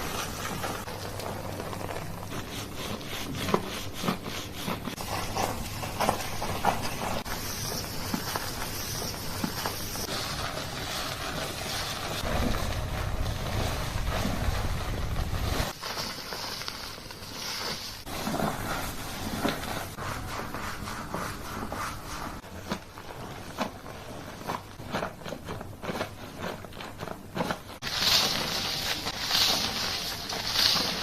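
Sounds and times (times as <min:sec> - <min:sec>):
fingers rubbing through hair: 0:00.0 - 0:31.0
low rumble: 0:12.2 - 0:15.7.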